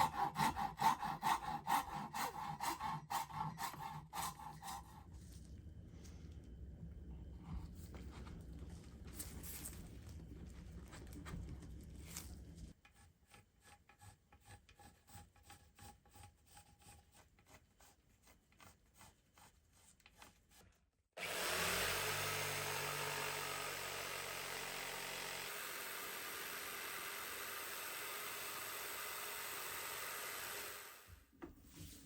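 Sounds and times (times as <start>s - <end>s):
hand tool rasping wood: 0.0s - 5.1s, 12.8s - 20.6s
power tool running: 21.2s - 31.2s.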